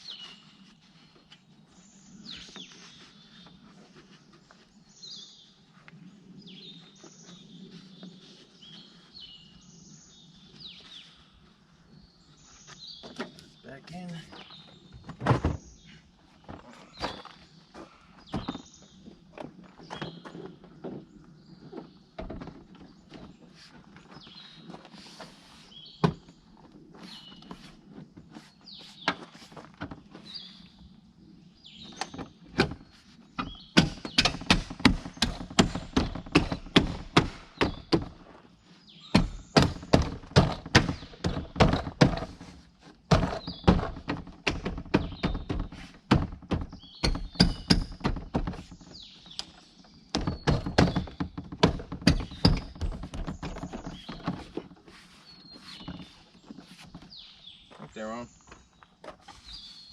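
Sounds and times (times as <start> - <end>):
loud sharp knocks and clicks: 33.7 - 38.1, 39.1 - 42.4, 43.1 - 48.8, 50.1 - 53.6.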